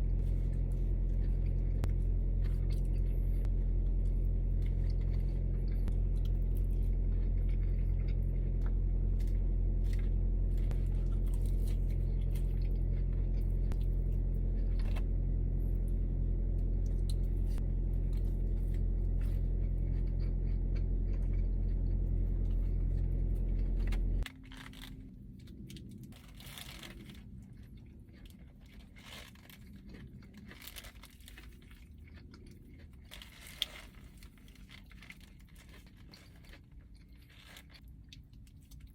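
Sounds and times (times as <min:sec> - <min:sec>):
low mechanical hum: 0:00.0 - 0:38.9
food being bitten: 0:16.6 - 0:24.9
food wrapping crinkling: 0:18.0 - 0:38.9.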